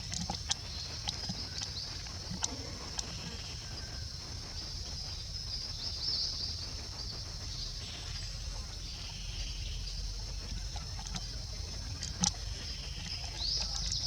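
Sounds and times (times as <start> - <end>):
low rumble: 0.0 - 14.0.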